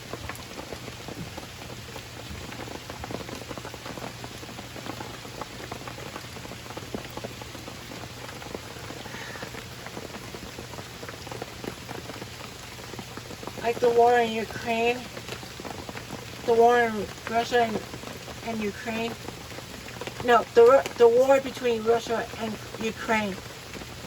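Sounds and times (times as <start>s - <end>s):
rain falling: 0.0s - 24.0s
raindrops ticking: 0.0s - 24.0s.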